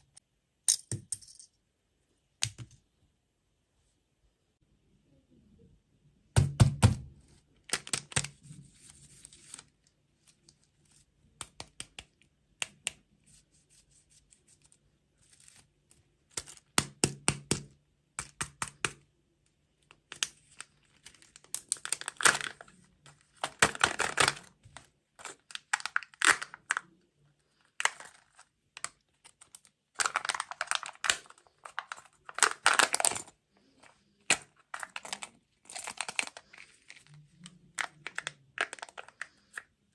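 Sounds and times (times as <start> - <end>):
food packaging tearing and crinkling: 23.3 - 26.8, 29.2 - 33.3, 34.3 - 37.2.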